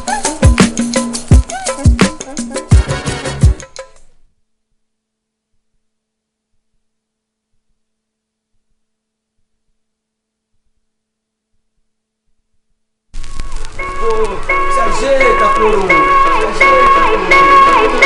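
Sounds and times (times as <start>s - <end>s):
faint steady hum: 3.9s - 18.0s.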